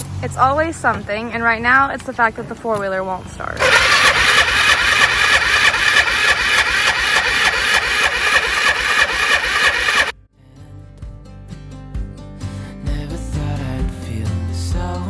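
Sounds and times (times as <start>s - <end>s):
engine cranking on starter: 3.6s - 10.1s.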